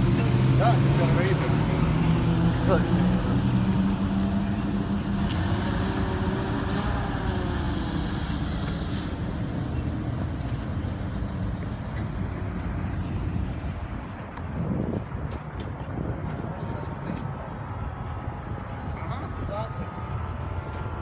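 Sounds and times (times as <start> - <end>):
vehicle engine running: 0.0 - 14.6.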